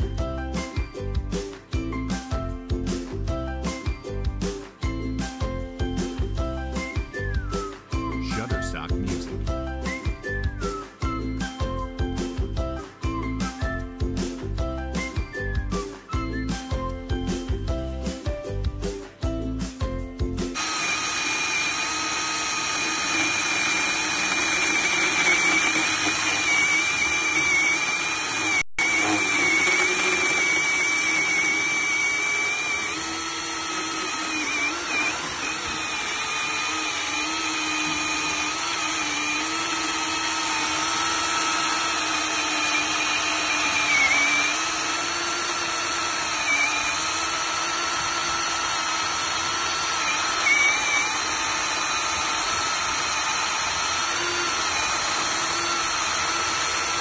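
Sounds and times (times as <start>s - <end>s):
electric chainsaw whining: 6.0s - 9.2s, 20.5s - 57.0s.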